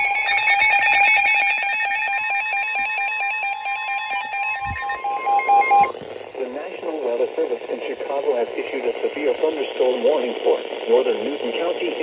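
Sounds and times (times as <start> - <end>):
rapid pulsing alarm beeps: 0.0 - 5.9
steady warning tone: 2.2 - 6.0.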